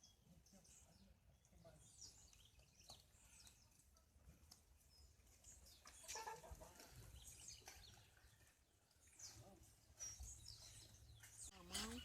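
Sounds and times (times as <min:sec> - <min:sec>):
small birds chirping: 0:00.0 - 0:12.0
faint chickens clucking: 0:05.9 - 0:07.1.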